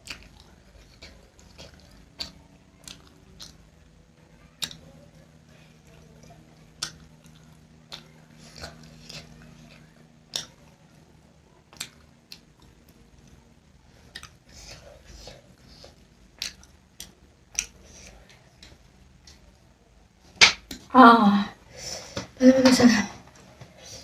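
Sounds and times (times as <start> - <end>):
mouth clicks and smacks: 0.0 - 3.6, 4.6 - 4.8, 10.3 - 10.7, 14.1 - 19.4
person chewing and eating: 0.0 - 3.7, 5.9 - 11.0, 11.7 - 19.4.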